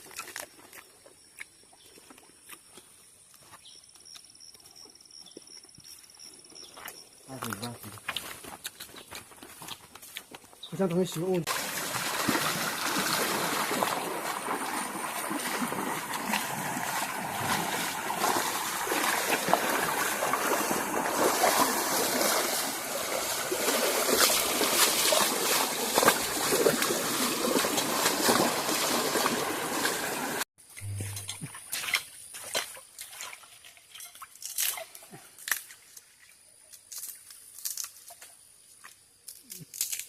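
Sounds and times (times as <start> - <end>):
sharp water splashes: 11.2 - 30.5
stream water flowing: 11.2 - 30.5.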